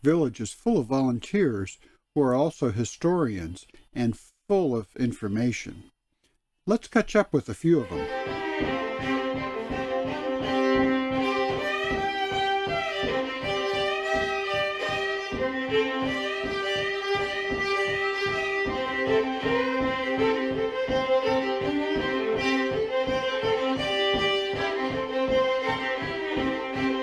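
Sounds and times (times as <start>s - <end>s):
bowed violin melody: 7.8s - 27.0s
steady beat: 7.8s - 27.0s
held drone notes: 8.0s - 27.0s.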